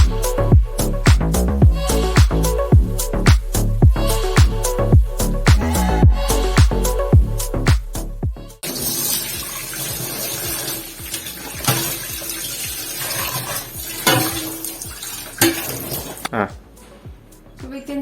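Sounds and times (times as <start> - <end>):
water gushing from tap: 8.6 - 16.3
water splashing off plate: 8.6 - 16.3.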